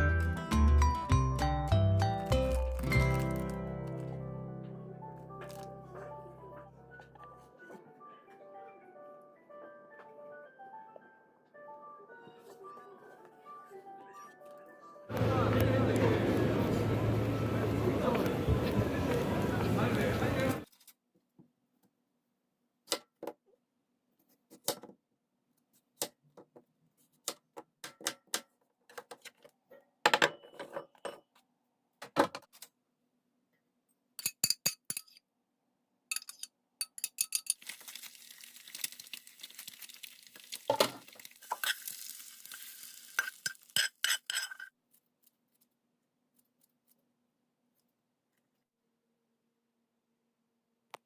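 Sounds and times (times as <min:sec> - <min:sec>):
dishes and utensils clinking: 0:36.1 - 0:37.6, 0:43.2 - 0:44.7.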